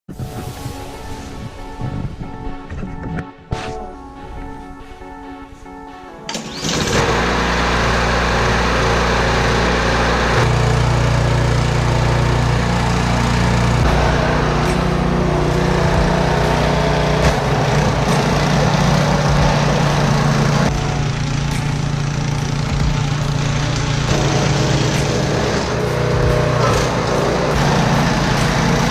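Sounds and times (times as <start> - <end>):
snow rushing noise: 0.1 - 2.2, 6.4 - 28.9
snowblower engine running: 6.3 - 28.9.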